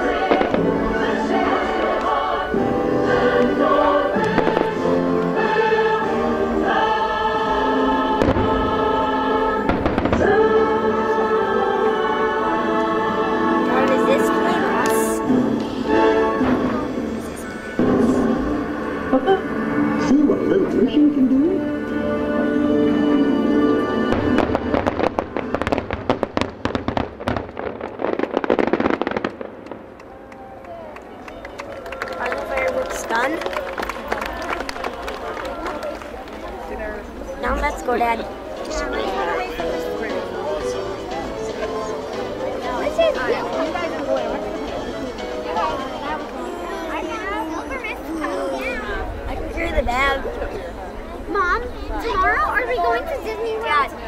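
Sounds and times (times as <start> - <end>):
firework bursts cracking: 0.0 - 2.2, 3.4 - 5.4, 8.2 - 9.0, 9.6 - 10.6, 24.1 - 30.0
orchestra playing: 0.0 - 25.6
choir singing sustained chords: 0.0 - 26.8, 34.0 - 46.7.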